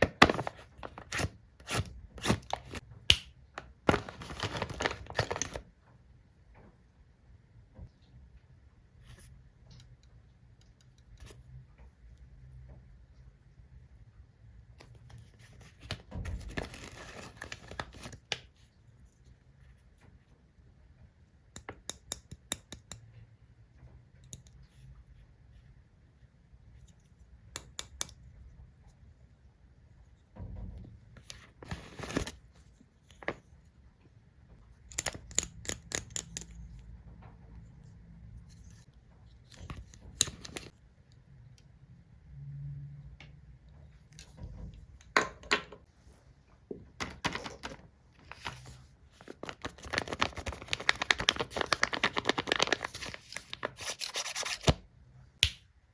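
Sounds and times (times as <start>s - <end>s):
packaging rustling and tearing: 3.9s - 5.6s, 47.0s - 54.8s.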